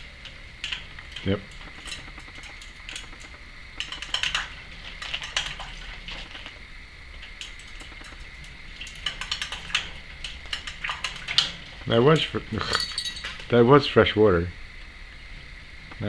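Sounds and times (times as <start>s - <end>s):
parrot splashing in water bowl: 0.0s - 13.9s
clinks against bowl: 12.6s - 13.5s.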